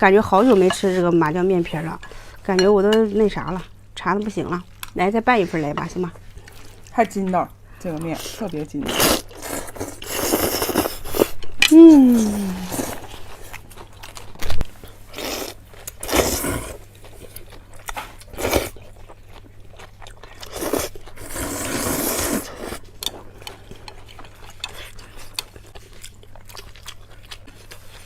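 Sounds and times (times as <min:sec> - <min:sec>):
chewing with wet clicks: 0:02.9 - 0:11.5, 0:15.5 - 0:21.2, 0:22.7 - 0:28.0
person eating noodles: 0:08.3 - 0:14.2, 0:15.0 - 0:19.4, 0:20.0 - 0:28.0.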